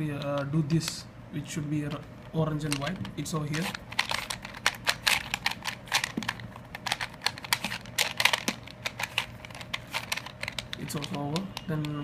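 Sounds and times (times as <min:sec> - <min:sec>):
puzzle cube plastic clicks: 0:02.6 - 0:12.0.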